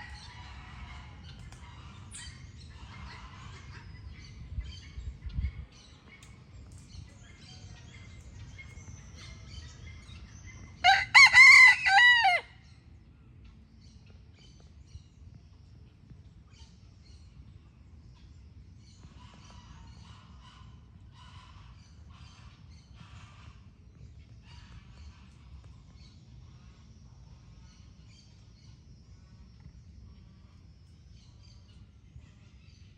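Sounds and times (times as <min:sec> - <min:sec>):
low background rumble: 0:00.0 - 0:32.9
rooster crowing: 0:10.8 - 0:12.6.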